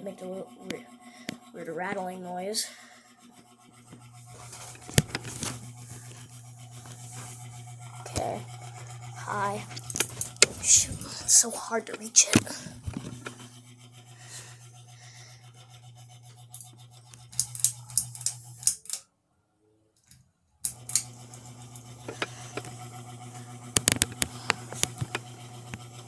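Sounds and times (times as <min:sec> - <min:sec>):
ceiling fan motor humming: 0:00.0 - 0:19.0, 0:20.6 - 0:26.0
sharp scratchy clicks: 0:03.9 - 0:07.0, 0:08.0 - 0:13.4, 0:23.8 - 0:25.8.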